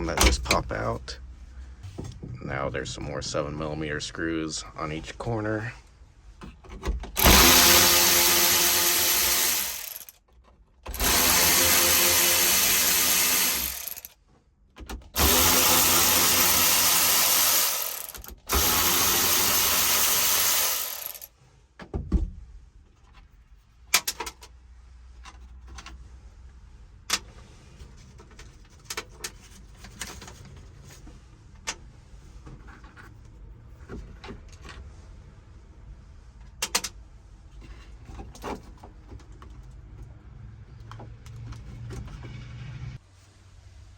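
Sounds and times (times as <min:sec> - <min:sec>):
power drill backing out screws: 0:07.2 - 0:10.1, 0:10.9 - 0:14.1, 0:15.2 - 0:21.3.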